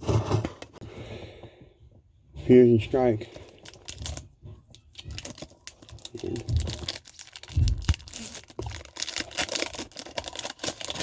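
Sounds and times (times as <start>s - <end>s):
foil wrapper tearing and crinkling: 4.9s - 11.0s.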